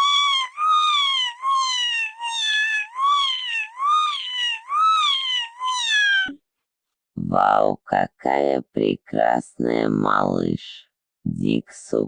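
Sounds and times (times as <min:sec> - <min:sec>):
high-pitched voice wailing: 0:00.0 - 0:06.4.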